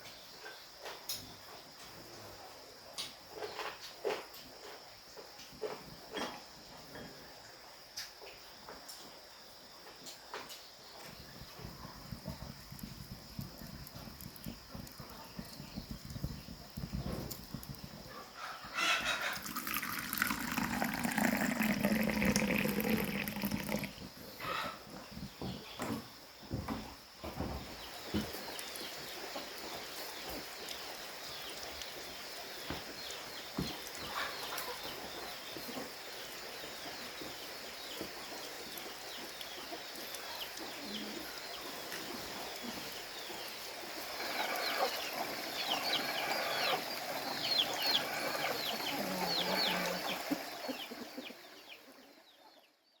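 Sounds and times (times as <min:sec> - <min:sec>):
chickens clucking and peeping: 0:17.7 - 0:19.5, 0:24.3 - 0:25.8, 0:33.6 - 0:52.8.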